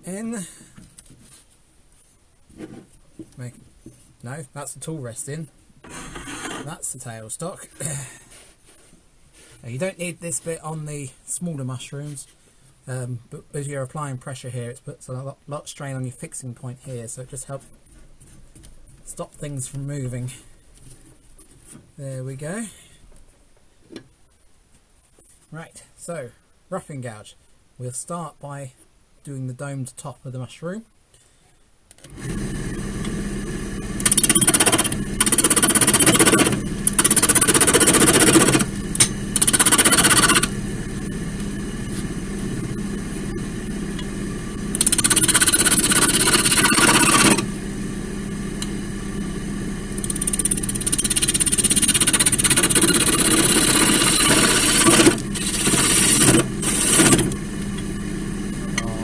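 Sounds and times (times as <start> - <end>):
gouge cutting spinning wood: 32.1 - 59.0
wood lathe humming: 32.1 - 59.0.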